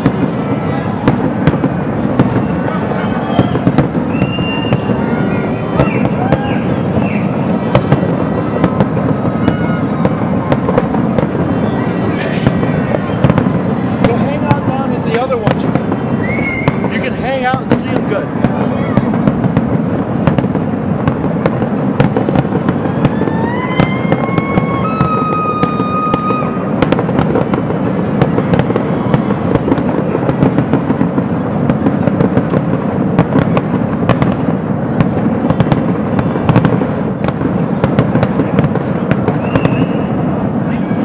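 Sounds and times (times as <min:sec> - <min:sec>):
fireworks crackling and banging: 0:00.0 - 0:41.0
whistling fireworks: 0:00.0 - 0:41.0.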